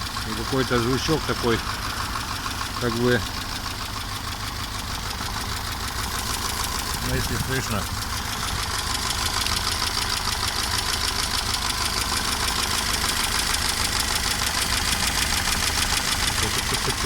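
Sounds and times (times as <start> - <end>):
car engine idling: 0.0 - 17.0
fast light engine ticking: 0.0 - 17.0.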